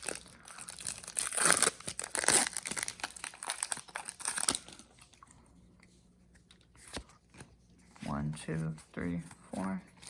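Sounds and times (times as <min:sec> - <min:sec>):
foil wrapper crinkling and tearing: 0:00.0 - 0:04.9.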